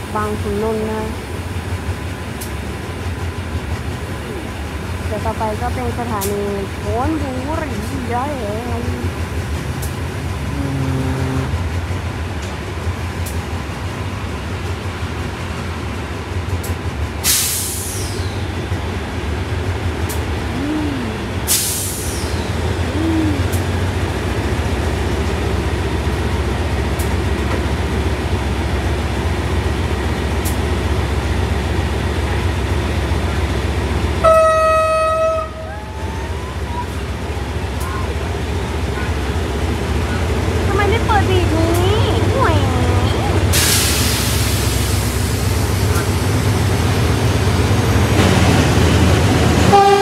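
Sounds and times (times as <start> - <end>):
train rumbling on track: 0.0 - 50.0
train horn blast: 10.4 - 11.8, 34.2 - 35.8, 49.6 - 50.0.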